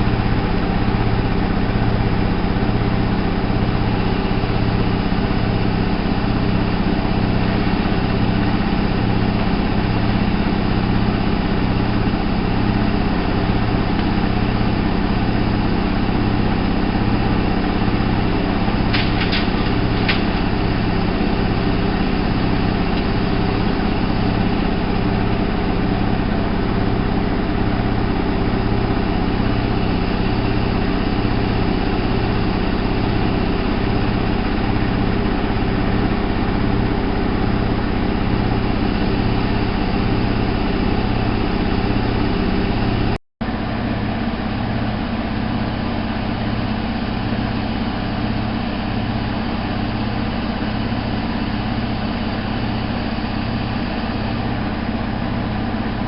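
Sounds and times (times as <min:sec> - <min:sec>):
washing machine pulsing hum: 0:00.0 - 0:56.0.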